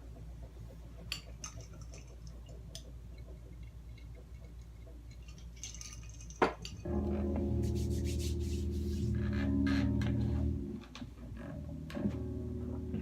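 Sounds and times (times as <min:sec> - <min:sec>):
faint clinks and rattles: 0:01.0 - 0:07.0
low hum: 0:06.6 - 0:13.0
music with low bass: 0:06.9 - 0:13.0.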